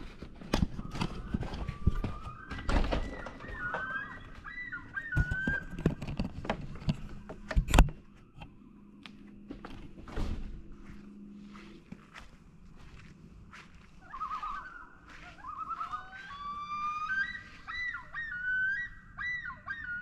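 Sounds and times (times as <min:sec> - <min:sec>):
loon calling: 0:00.8 - 0:06.1, 0:14.0 - 0:20.0.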